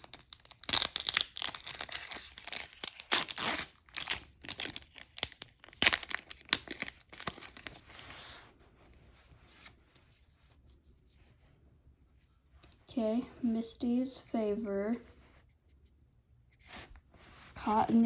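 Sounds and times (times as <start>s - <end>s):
foil wrapper tearing and crinkling: 0.0s - 7.9s.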